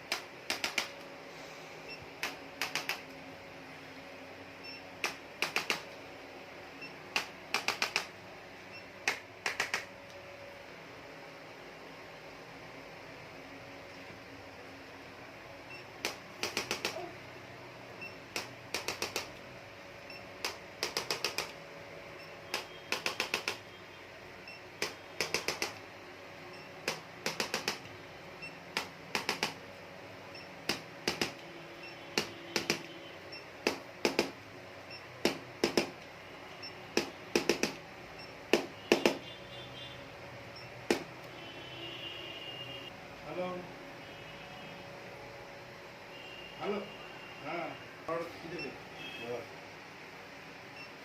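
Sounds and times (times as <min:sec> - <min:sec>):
sharp clicks in quick runs: 0:02.2 - 0:03.0, 0:18.4 - 0:19.4.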